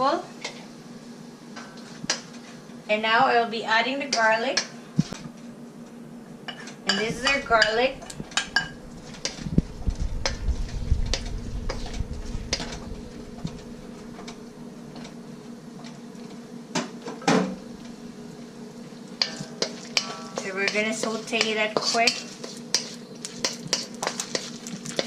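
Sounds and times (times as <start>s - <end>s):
onions frying in oil: 6.5s - 25.0s
low hum: 6.9s - 15.8s, 17.5s - 20.6s
metal utensil knocking on wok: 19.2s - 21.6s.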